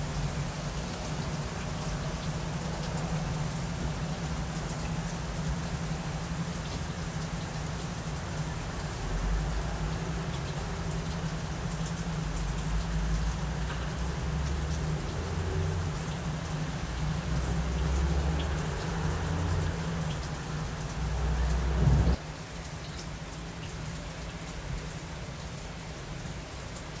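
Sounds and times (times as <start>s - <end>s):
steady rain: 0.0s - 27.0s
thunder rumbling: 12.7s - 22.2s.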